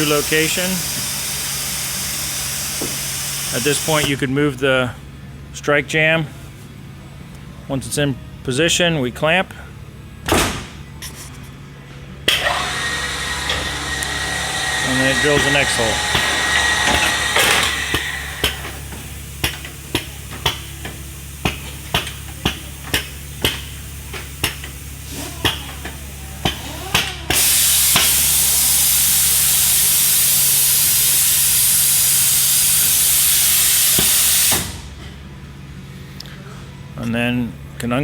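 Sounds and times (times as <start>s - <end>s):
compressed air hissing: 0.0s - 4.3s, 12.4s - 35.0s
machine clicks with air puffs: 0.0s - 4.3s, 12.3s - 35.1s.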